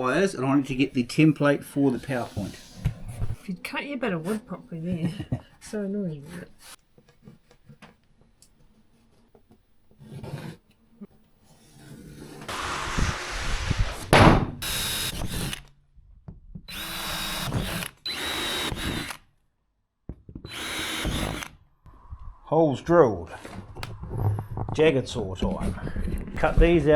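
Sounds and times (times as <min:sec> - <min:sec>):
power drill drilling through wall: 0:01.8 - 0:03.5, 0:06.2 - 0:06.8, 0:12.4 - 0:15.7, 0:16.7 - 0:19.2, 0:20.5 - 0:21.6.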